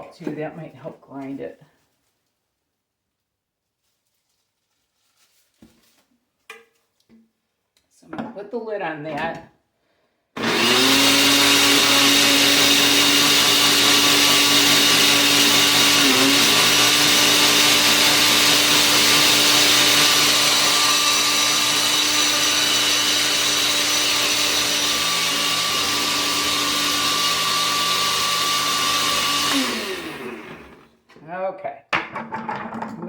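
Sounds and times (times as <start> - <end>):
blender motor grinding: 10.4 - 31.0.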